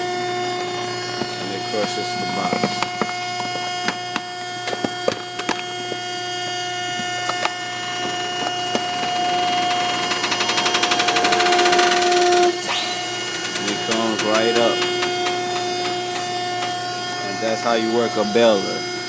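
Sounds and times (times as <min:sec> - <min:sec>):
pump motor humming: 0:00.0 - 0:19.0
rapid hydraulic pulsing: 0:07.8 - 0:17.2.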